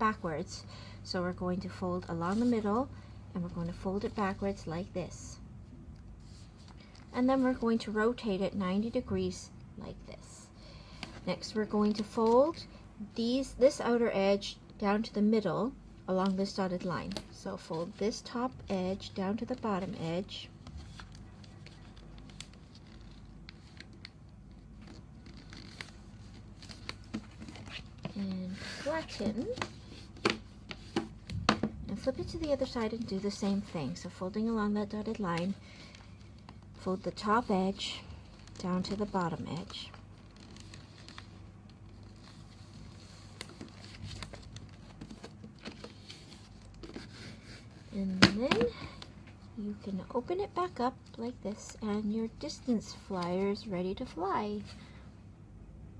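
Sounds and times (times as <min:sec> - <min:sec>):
low steady hum: 0:00.0 - 0:55.9
paper being folded: 0:17.7 - 0:48.0.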